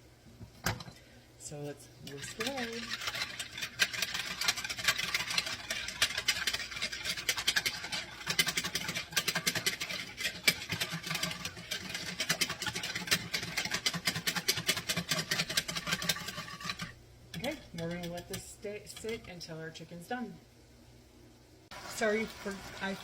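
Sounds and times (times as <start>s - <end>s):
whisk beating sauce in bowl: 1.6s - 19.4s.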